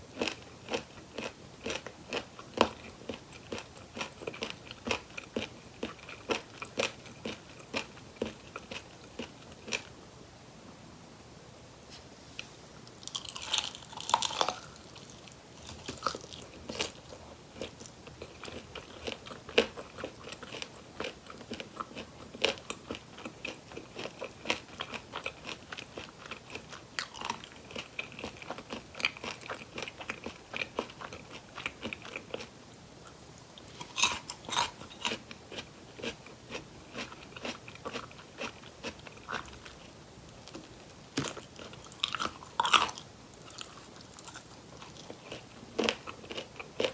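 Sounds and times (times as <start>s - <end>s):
crunchy chewing: 0.1s - 9.9s, 12.4s - 46.9s
crunching bites into fried chicken: 13.1s - 32.4s.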